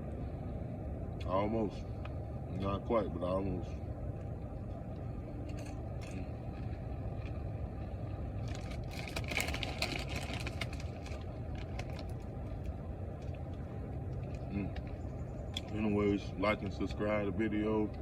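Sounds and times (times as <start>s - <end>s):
car interior rumble: 0.0s - 18.0s
crackly crunching: 4.7s - 15.8s.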